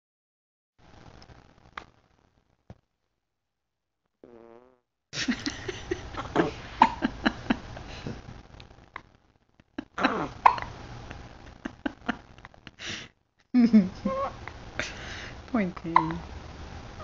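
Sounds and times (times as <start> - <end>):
farting: 4.2 - 4.9.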